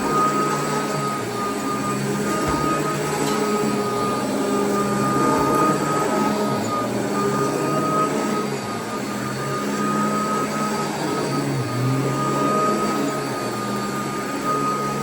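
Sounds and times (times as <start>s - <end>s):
vacuum cleaner running on carpet: 0.0s - 15.0s.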